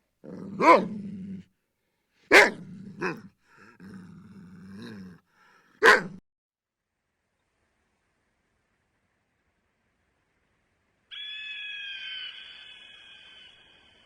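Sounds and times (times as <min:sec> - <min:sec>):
dog growling: 0:00.2 - 0:01.5, 0:02.3 - 0:06.2
dog barking sharply: 0:02.3 - 0:03.2, 0:05.8 - 0:06.2.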